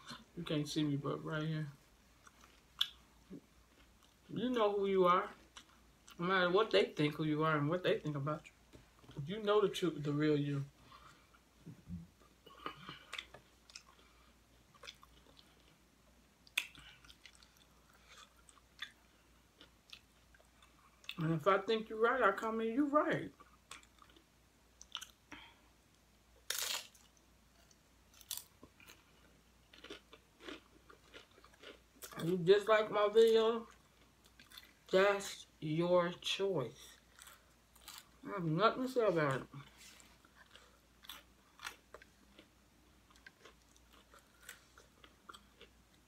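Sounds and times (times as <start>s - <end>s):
crunching of chips being chewed: 16.4s - 21.2s, 26.4s - 32.4s, 37.0s - 38.2s, 39.7s - 46.0s
crunching tortilla chips: 26.4s - 32.5s.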